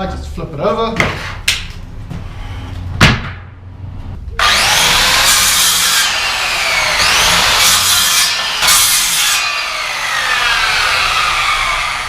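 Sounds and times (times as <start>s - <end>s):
circular saw cutting wood: 4.4s - 12.0s.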